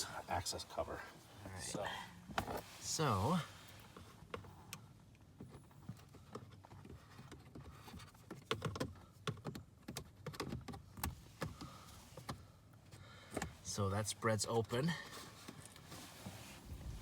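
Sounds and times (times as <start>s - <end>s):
small plastic clicks and knocks: 6.3s - 12.4s.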